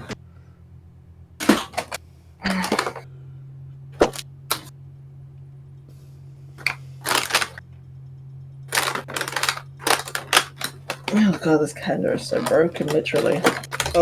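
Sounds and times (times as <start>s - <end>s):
steady low hum: 0.0s - 14.0s
cardboard crackling and ripping: 1.4s - 3.0s, 6.6s - 7.6s, 8.7s - 11.6s, 12.2s - 14.0s.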